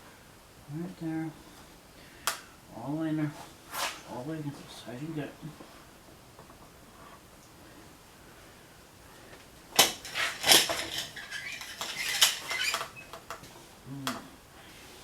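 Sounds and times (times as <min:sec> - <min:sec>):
metal clinking and scraping: 0:09.8 - 0:12.9.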